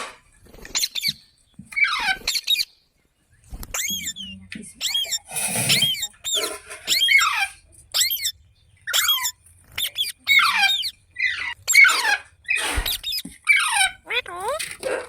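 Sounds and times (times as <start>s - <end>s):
parakeet shrill calls: 1.8s - 2.7s, 3.7s - 14.6s.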